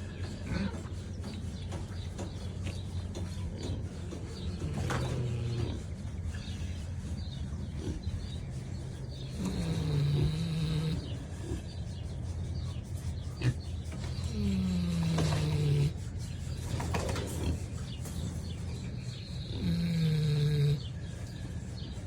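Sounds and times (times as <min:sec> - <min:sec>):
pig snoring: 0:00.0 - 0:01.4, 0:03.5 - 0:12.1, 0:13.3 - 0:16.2, 0:16.8 - 0:21.4.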